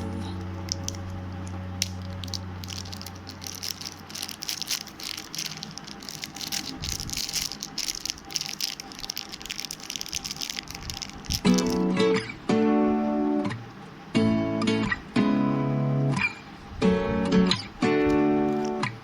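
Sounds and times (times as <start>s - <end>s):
small rattles: 0.0s - 12.0s
packaging crinkling: 0.0s - 12.3s, 18.4s - 18.9s.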